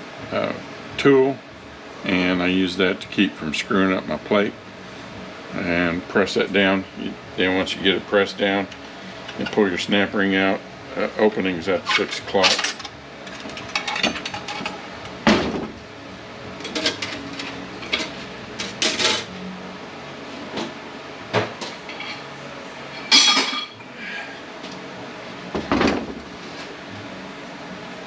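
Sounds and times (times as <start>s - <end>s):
metal tools clinking on a bench: 11.9s - 14.8s, 22.9s - 23.8s.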